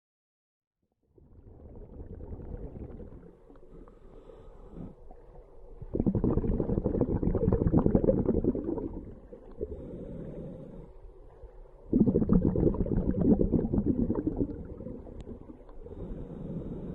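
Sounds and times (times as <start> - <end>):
gurgling bubbles: 1.1 - 4.0, 4.8 - 9.9, 11.8 - 16.9
diver breathing through regulator: 3.0 - 16.9.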